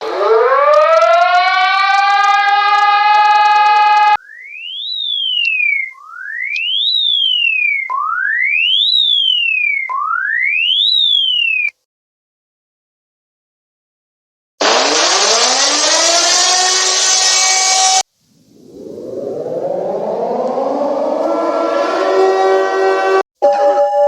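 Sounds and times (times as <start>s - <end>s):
buzzy rising alarm tone: 0.0s - 11.7s, 14.6s - 23.2s
whistle-like sweeping tone: 2.4s - 8.6s, 15.5s - 18.0s, 18.6s - 23.2s.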